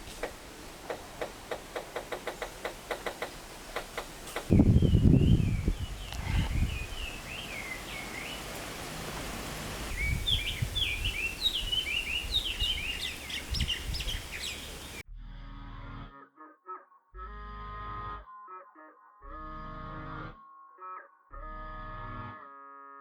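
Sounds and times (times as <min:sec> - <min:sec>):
birds chirping: 0:00.0 - 0:15.0
background music: 0:15.1 - 0:23.0.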